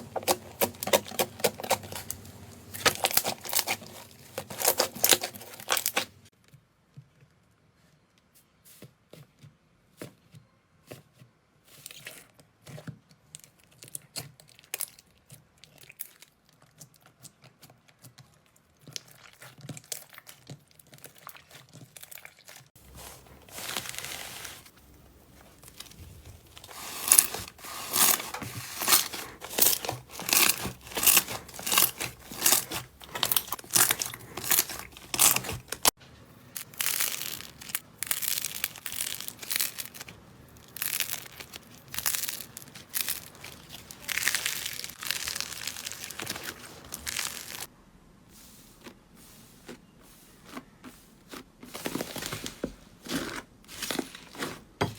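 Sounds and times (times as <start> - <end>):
slime squishing and popping: 0.0 - 6.0, 27.0 - 35.9, 36.6 - 47.7.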